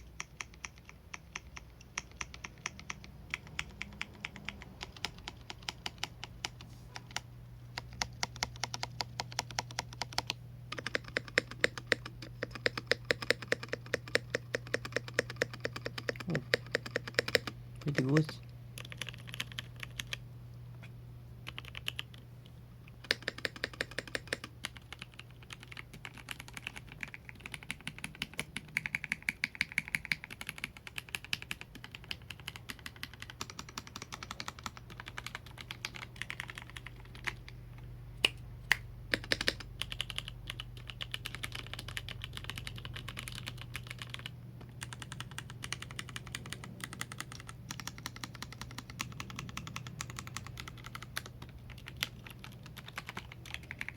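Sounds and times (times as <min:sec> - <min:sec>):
low steady hum: 0:00.0 - 0:53.9
mechanical keyboard key clacks: 0:07.8 - 0:18.0, 0:23.0 - 0:37.4, 0:39.1 - 0:53.9.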